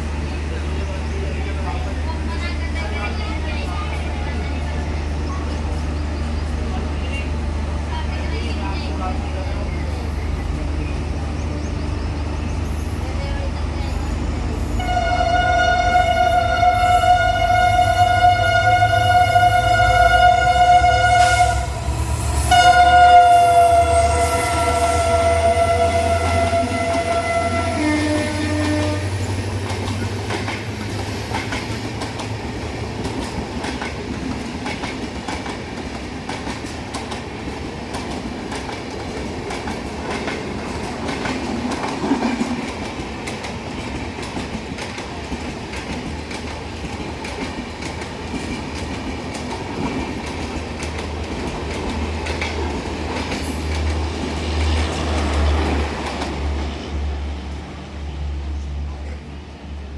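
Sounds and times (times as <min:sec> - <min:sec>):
train coaches rumbling: 0:00.0 - 0:59.9
diesel locomotive horn: 0:08.4 - 0:29.4
wheels clicking over rail joints: 0:25.2 - 0:56.8.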